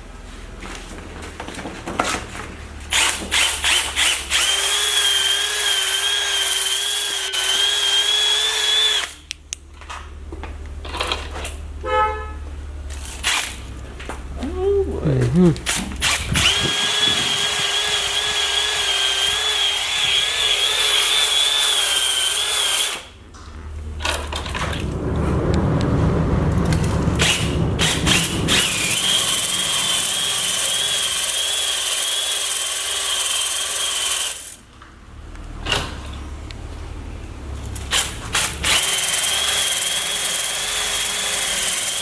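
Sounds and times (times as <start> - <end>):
electric drill whining: 2.9 - 9.3, 15.7 - 23.1, 26.8 - 34.6, 37.9 - 42.0.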